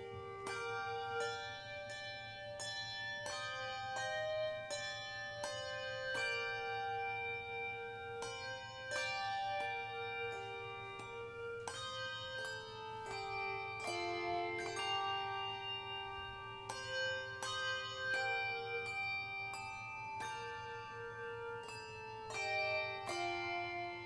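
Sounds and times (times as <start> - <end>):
handbell choir ringing: 8.1 - 24.0.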